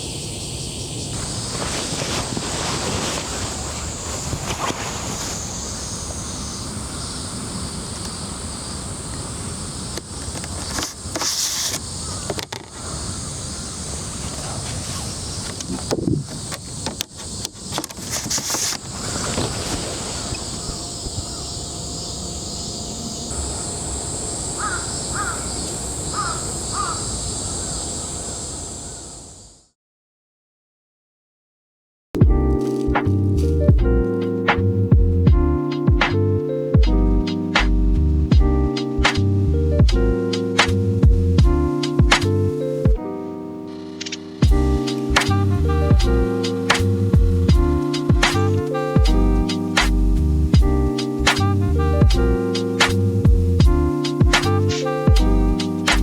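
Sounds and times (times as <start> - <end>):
city ambience hiss: 0.0 - 29.7, 35.6 - 56.0
crow cawing: 11.8 - 14.1, 24.5 - 29.2.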